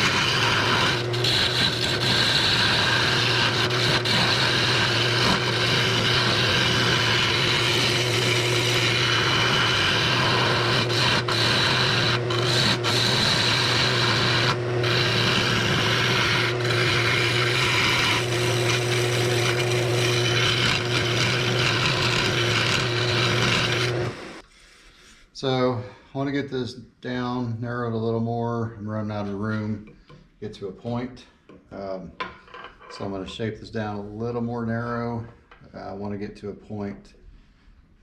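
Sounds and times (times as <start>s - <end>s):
lathe motor hum: 0.0s - 24.4s
lathe tool scraping wood: 0.0s - 24.4s.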